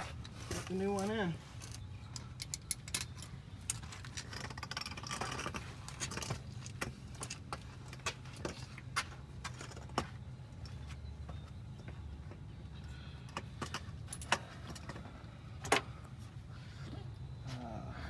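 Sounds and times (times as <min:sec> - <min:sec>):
steady low hum: 0:00.0 - 0:18.0
metal tools clinking: 0:00.5 - 0:08.7.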